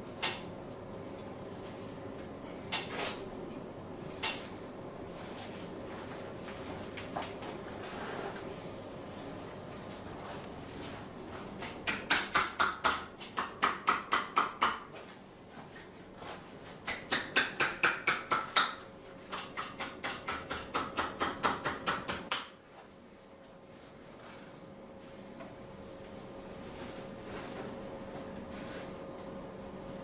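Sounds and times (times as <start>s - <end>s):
hands slapping in massage: 11.6s - 14.9s, 16.8s - 22.5s.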